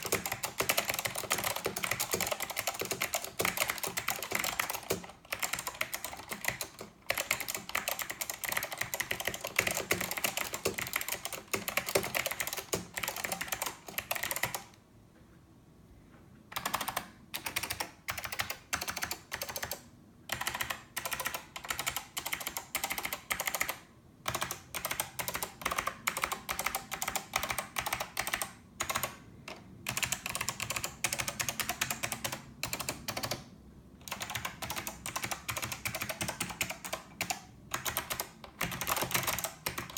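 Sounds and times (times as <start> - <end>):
mechanical keyboard typing: 0.0 - 14.8, 16.5 - 39.9.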